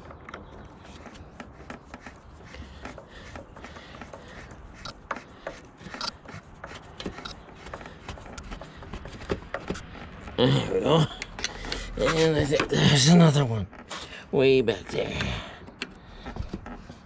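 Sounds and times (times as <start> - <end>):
tool scraping metal parts: 0.0 - 10.4
tool clicking on screw: 2.8 - 8.8.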